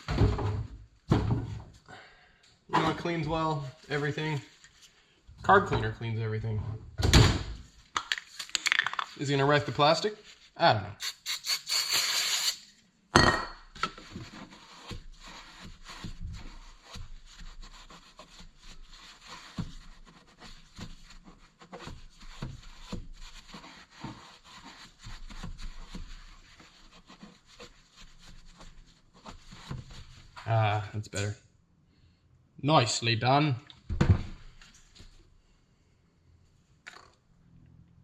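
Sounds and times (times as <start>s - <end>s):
scrubbing on plastic: 9.0s - 10.6s, 13.9s - 30.5s
aerosol spray hiss: 11.0s - 12.6s.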